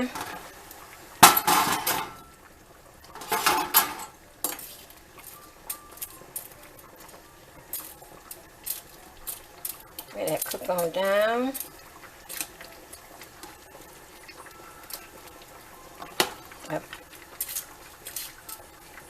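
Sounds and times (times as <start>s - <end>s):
utensil clanking against pot: 1.2s - 2.2s.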